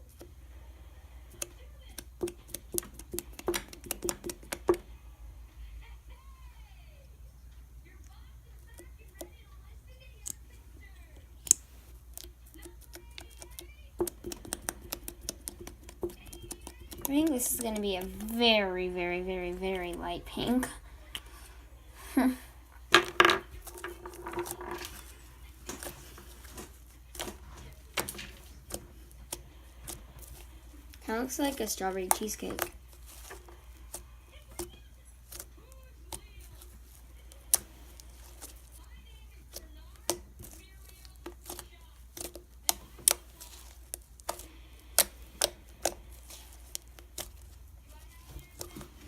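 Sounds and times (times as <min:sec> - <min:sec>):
low background hum: 0:00.0 - 0:49.0
slime clicking and popping: 0:01.3 - 0:04.8, 0:11.3 - 0:18.4, 0:27.1 - 0:48.9.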